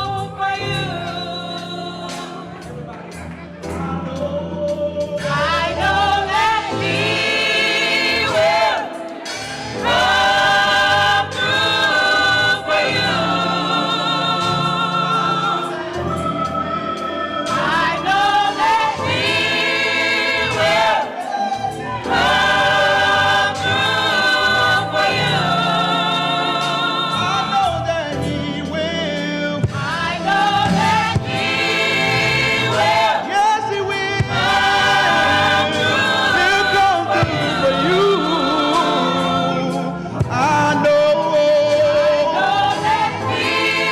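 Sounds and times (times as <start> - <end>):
gospel choir singing: 0.0 - 43.9.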